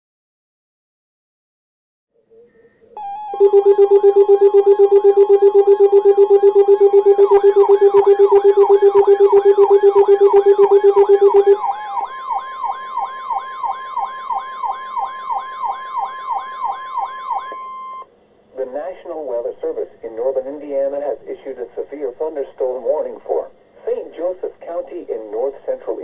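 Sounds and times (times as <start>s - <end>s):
rapid low beeping: 3.0s - 18.0s
siren-like wail: 3.0s - 18.0s
steady high alarm tone: 3.0s - 18.1s.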